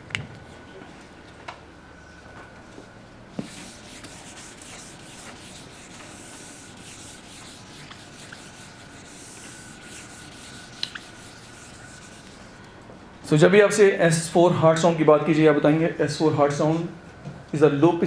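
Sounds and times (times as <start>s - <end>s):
faint steady whine: 0.0s - 18.0s
scratching on writing surface: 3.4s - 12.6s.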